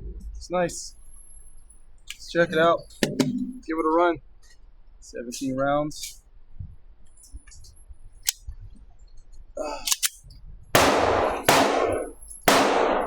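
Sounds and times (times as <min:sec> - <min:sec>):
pistol shots with ringing echo: 0:10.8 - 0:13.0.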